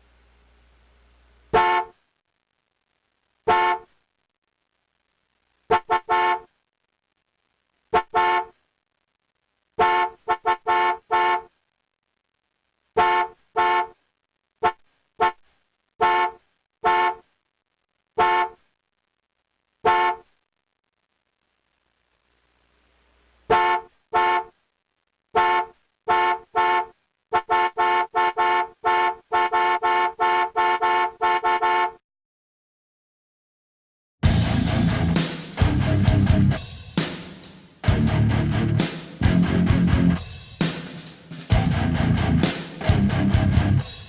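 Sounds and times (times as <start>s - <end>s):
car horn honks: 1.6s - 1.9s, 3.5s - 3.8s, 5.7s - 6.4s, 8.0s - 8.5s, 9.8s - 11.5s, 13.0s - 13.9s, 16.0s - 17.2s, 18.2s - 18.6s, 19.9s - 20.2s, 23.5s - 24.5s, 25.4s - 32.0s.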